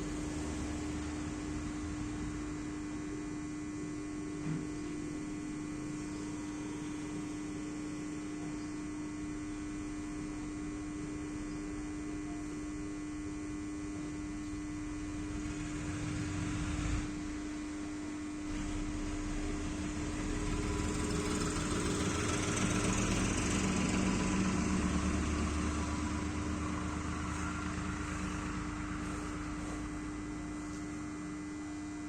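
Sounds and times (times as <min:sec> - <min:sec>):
welding machine humming: 0:00.0 - 0:32.0.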